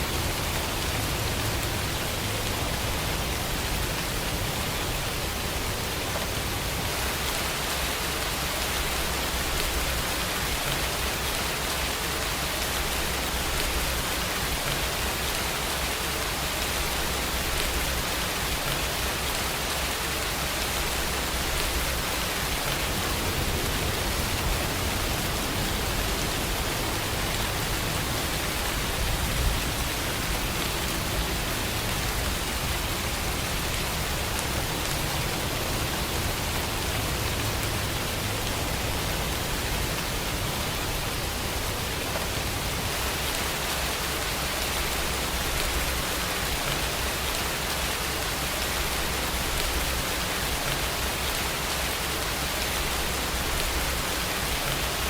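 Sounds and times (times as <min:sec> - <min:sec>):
steady rainfall: 0:00.0 - 0:55.0.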